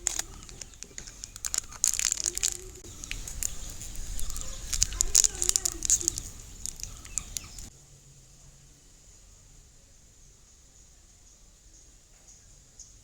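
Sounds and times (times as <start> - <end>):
hands crinkling slime: 0.0 - 7.7.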